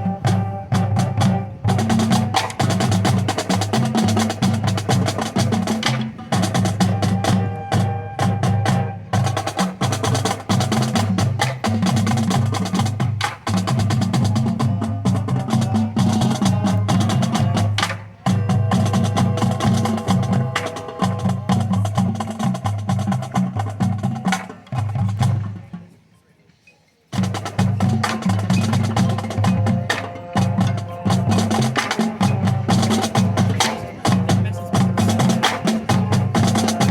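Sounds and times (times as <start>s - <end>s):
marching drumline playing: 0.0s - 26.0s, 27.1s - 36.9s.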